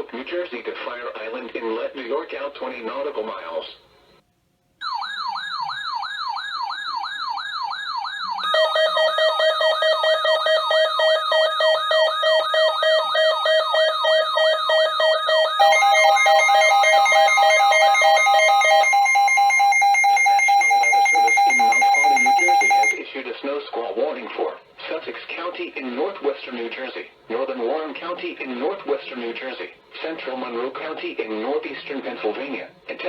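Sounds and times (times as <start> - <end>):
electronic siren wailing: 4.8 - 23.0
pulsing alarm tone: 4.8 - 23.0
steady alert tone: 8.4 - 23.0.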